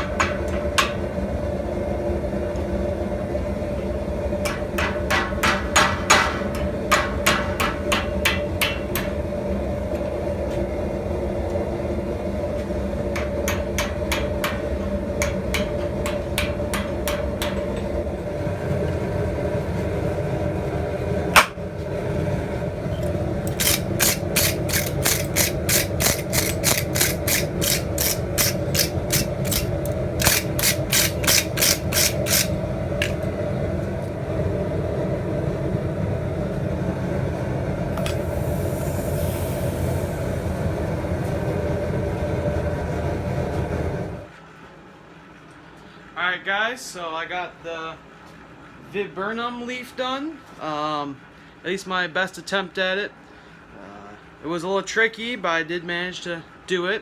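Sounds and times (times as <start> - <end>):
hammer striking steel on anvil: 0.0 - 1.1, 4.4 - 9.2, 13.1 - 17.9, 21.4 - 21.6, 23.5 - 33.2, 38.0 - 38.3.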